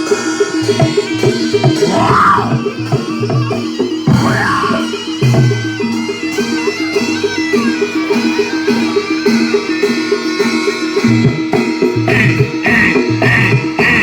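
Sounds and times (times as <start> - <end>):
drumming: 0.0 - 14.0
reed wind instrument melody: 0.0 - 14.0
tuned percussion pattern: 0.6 - 14.0.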